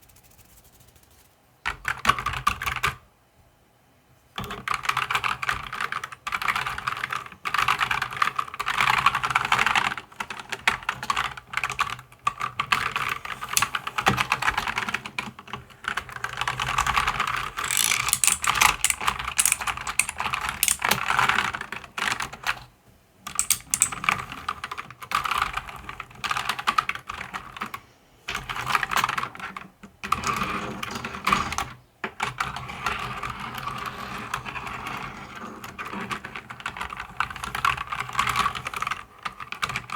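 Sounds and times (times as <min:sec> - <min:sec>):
mechanical keyboard typing: 0:04.5 - 0:22.4, 0:23.3 - 0:27.6.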